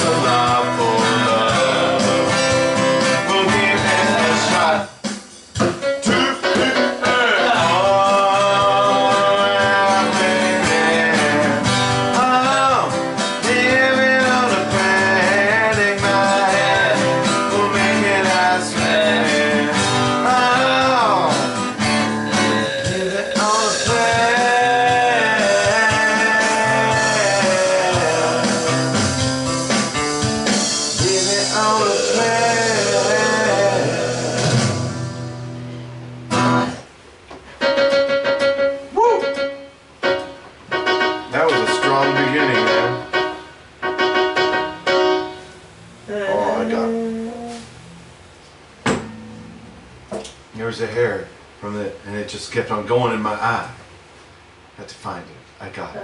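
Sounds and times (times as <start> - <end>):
person singing: 0.0 - 2.4, 3.2 - 5.0, 6.1 - 29.5, 31.0 - 34.9, 46.1 - 47.7
strummed guitar: 0.0 - 36.9, 37.6 - 48.1, 48.8 - 50.1.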